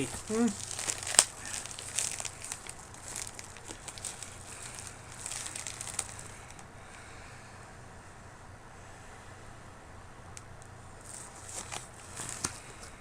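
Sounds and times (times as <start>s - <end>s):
packaging crinkling and rustling: 0.0s - 6.6s, 11.0s - 13.0s.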